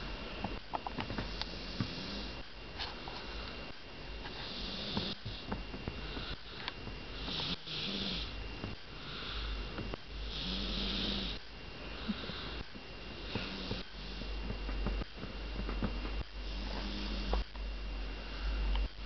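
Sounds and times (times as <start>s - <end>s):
person snoring: 1.1s - 2.4s, 4.3s - 14.3s, 16.4s - 17.5s.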